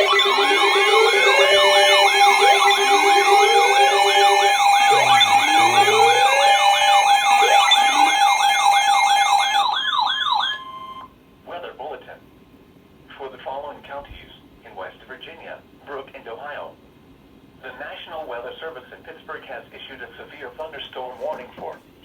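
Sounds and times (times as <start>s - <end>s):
electronic sirens wailing and yelping: 0.0s - 11.1s
steady alert tone: 0.8s - 8.4s.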